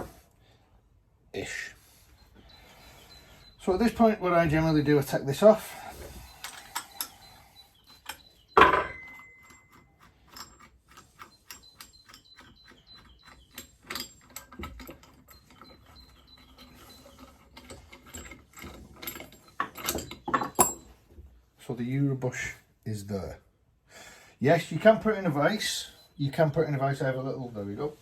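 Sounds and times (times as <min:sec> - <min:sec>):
metallic clicks of tools: 0:06.3 - 0:20.8.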